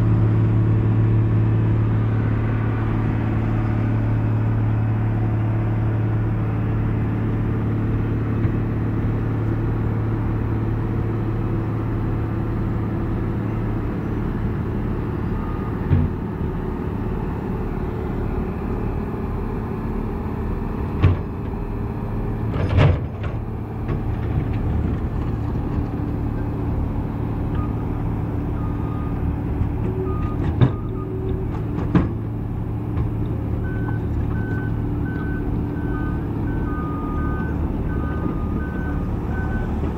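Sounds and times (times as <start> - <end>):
reversing beeps: 15.3 - 15.9, 27.5 - 27.8, 28.5 - 29.3, 29.9 - 31.5, 33.6 - 39.9.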